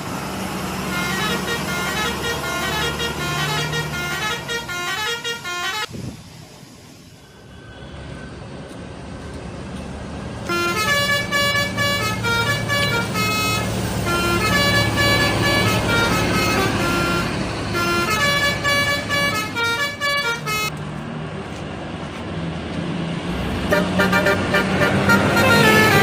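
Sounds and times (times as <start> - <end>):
bus horn playing musical notes: 0.0 - 5.9, 10.4 - 20.7, 23.7 - 26.0
bus engine running: 0.0 - 26.0.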